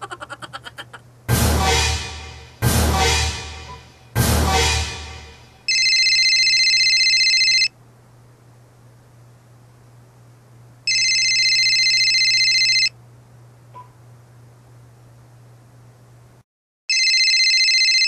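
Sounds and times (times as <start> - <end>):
telephone ringing: 5.7 - 7.7, 10.9 - 13.0, 16.9 - 18.0.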